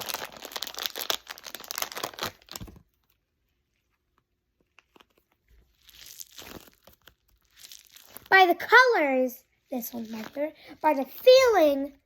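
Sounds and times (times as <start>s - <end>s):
plastic wrapping tearing and crinkling: 0.0s - 3.2s, 4.6s - 8.4s.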